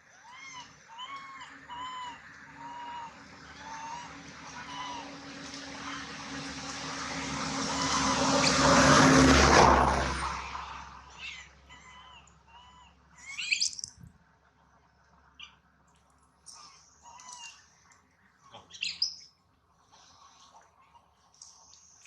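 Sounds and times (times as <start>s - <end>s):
baby monkey crying calls: 0.1s - 5.2s, 7.7s - 8.6s, 11.1s - 13.9s
motor vehicle passing: 1.0s - 12.2s.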